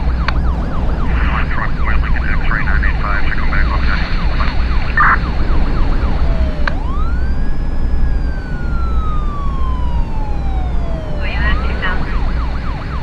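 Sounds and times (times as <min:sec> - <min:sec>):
vehicle rumble: 0:00.0 - 0:13.0
police siren wail: 0:04.9 - 0:13.0
police siren yelping: 0:06.2 - 0:13.0.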